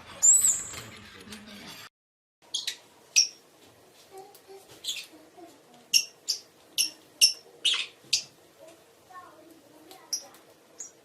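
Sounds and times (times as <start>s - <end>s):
parrot chirping: 0.1s - 0.9s, 2.4s - 3.4s, 4.8s - 5.2s, 5.9s - 8.4s, 10.1s - 11.0s.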